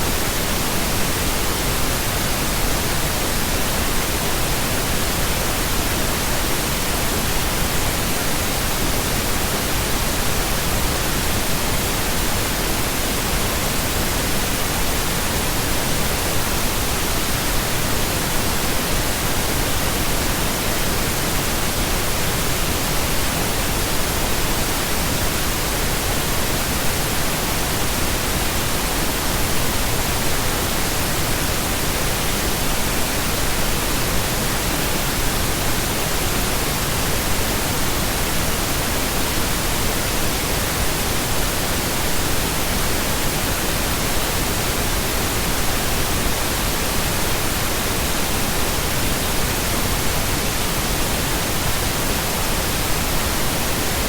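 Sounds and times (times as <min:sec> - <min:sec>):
pink noise hiss: 0:00.0 - 0:54.0.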